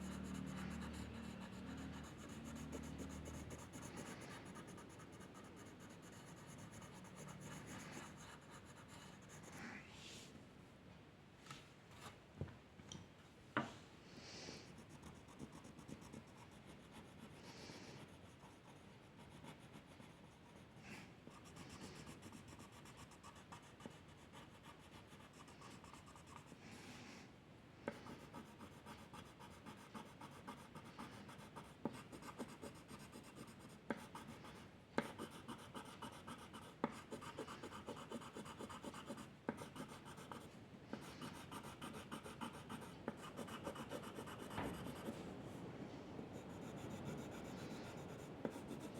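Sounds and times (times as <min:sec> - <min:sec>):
drawing tool scratching on paper: 0:00.0 - 0:09.6, 0:27.9 - 0:45.2.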